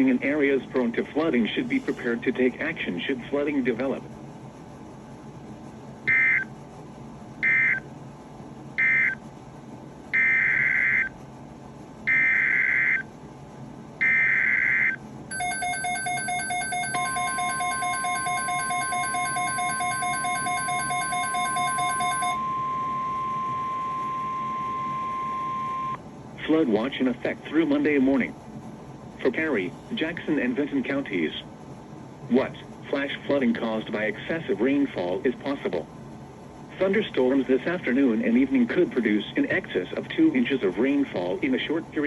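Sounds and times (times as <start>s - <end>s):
steady warning alarm tone: 6.1s - 6.5s, 7.4s - 7.9s, 8.8s - 9.2s, 10.1s - 11.2s, 12.0s - 13.1s, 14.0s - 26.0s
fast-pulsing electronic beep: 14.0s - 26.0s.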